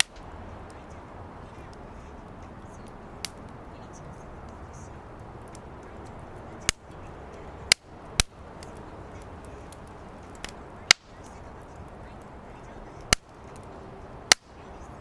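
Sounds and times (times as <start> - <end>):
sharp loud fire pops: 0.0 - 0.8, 9.5 - 11.4, 14.3 - 14.9
firewood crackling: 0.0 - 15.0.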